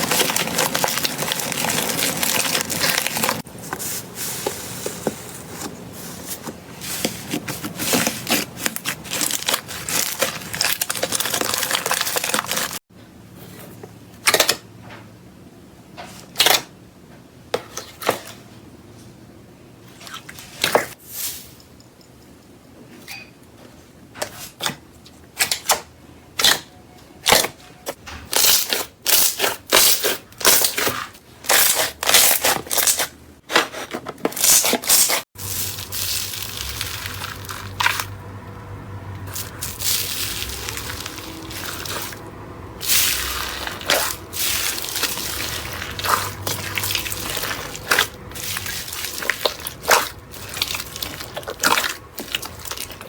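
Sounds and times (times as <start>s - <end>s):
wet sticky slime squelching: 39.2s - 53.0s.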